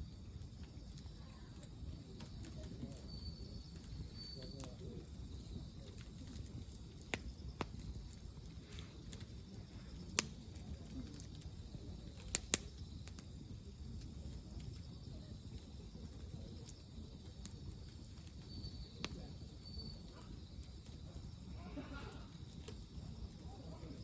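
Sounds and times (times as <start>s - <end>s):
sharp snaps: 6.0s - 7.8s, 10.1s - 10.3s, 12.2s - 13.2s.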